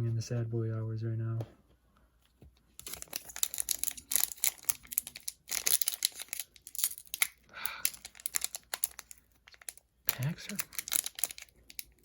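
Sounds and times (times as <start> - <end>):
foil wrapper tearing and crinkling: 2.8 - 12.0.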